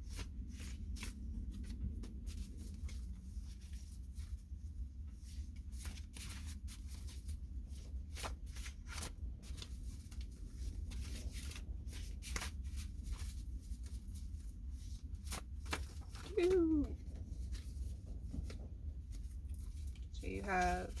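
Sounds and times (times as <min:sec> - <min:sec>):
cards being shuffled: 0:05.6 - 0:21.0.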